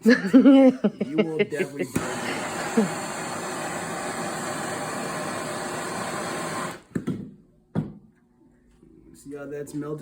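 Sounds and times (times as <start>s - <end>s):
torch flame hissing: 1.7s - 6.9s.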